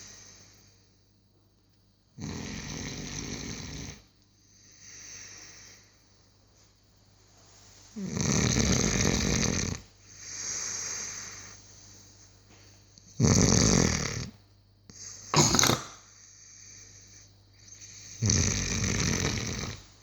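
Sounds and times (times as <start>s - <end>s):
puppy snoring: 2.2s - 4.1s, 8.0s - 11.6s, 13.1s - 14.4s, 15.0s - 16.1s, 17.6s - 20.0s.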